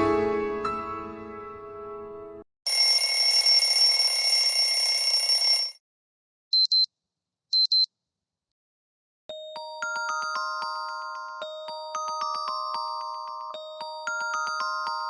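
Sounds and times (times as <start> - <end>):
short double beeps: 6.6 - 6.9, 7.6 - 7.9
chiming ringtone notes: 9.3 - 15.0.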